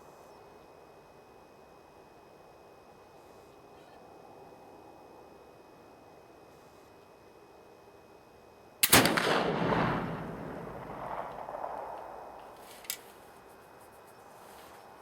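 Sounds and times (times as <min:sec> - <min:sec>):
rifle shot boom: 0:08.8 - 0:12.6.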